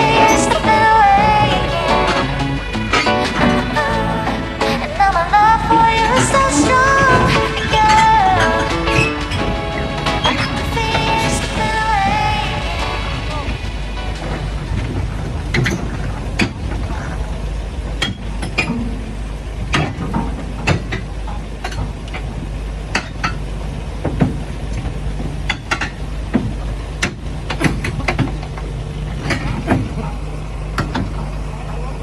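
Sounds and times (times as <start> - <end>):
hand tools clinking and scraping: 0.0 - 24.4
low machine hum: 0.0 - 32.0.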